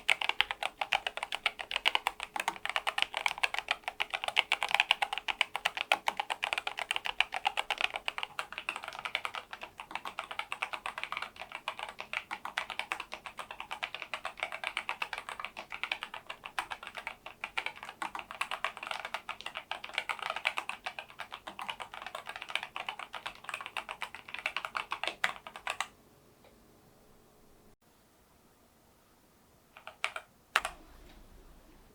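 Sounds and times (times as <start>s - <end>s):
fast typing on a keyboard: 0.0s - 25.9s, 29.8s - 30.8s.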